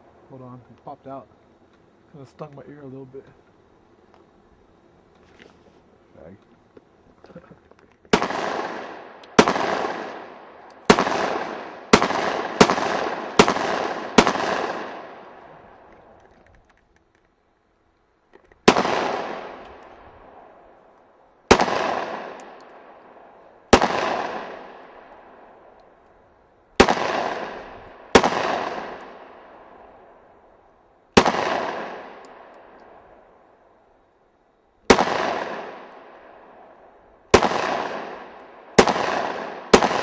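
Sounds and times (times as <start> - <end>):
pistol shots echoing: 8.1 - 15.6, 18.6 - 20.6, 21.4 - 25.8, 26.8 - 30.3, 31.1 - 33.0, 34.9 - 40.0.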